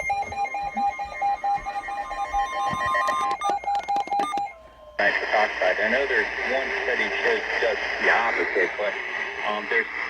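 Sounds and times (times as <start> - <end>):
steady high tone: 0.0 - 5.0
rapidly pulsing alarm tone: 0.0 - 8.9.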